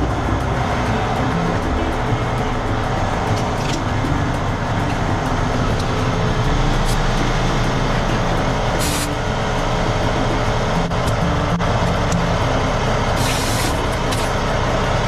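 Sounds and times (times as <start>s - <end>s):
diesel engine idling: 0.0s - 15.0s
sharp hiss of air: 8.8s - 9.2s, 13.2s - 14.4s.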